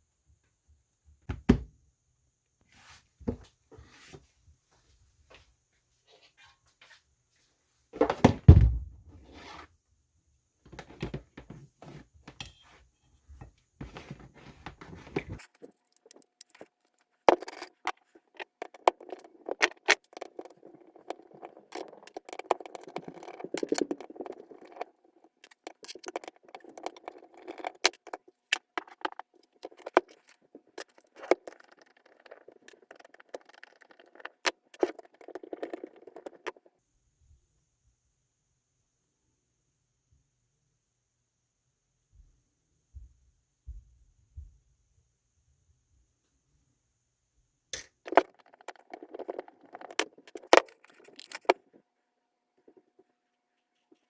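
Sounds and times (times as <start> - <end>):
thump: 8.1 - 9.0
small metal parts clicking: 15.4 - 36.6, 47.8 - 51.7.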